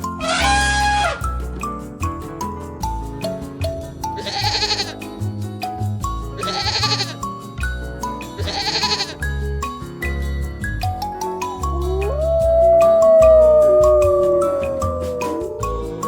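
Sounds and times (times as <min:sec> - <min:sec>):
background music: 0:00.0 - 0:16.0
animal bleating: 0:04.2 - 0:05.1, 0:06.4 - 0:07.3, 0:08.4 - 0:09.2.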